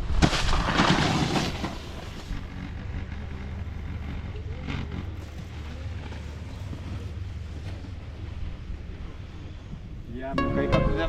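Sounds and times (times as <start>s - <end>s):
skis sliding on snow: 0.2s - 2.4s.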